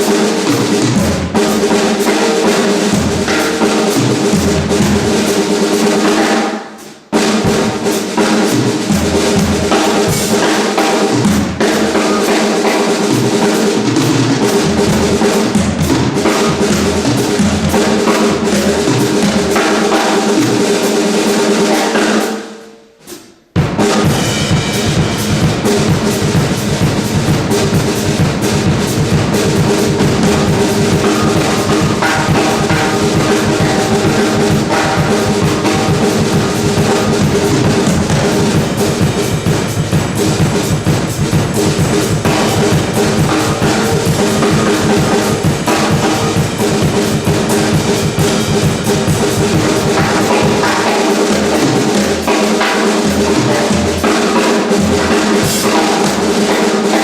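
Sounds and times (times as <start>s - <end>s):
drum kit playing: 0.0s - 57.0s
electric bass: 24.1s - 50.3s.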